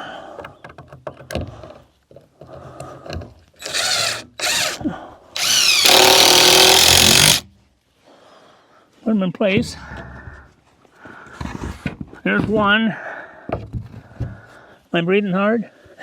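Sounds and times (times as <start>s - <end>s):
power drill driving screw: 3.6s - 4.8s, 5.4s - 7.4s
screws clicking and rattling: 3.6s - 4.8s, 5.4s - 7.4s.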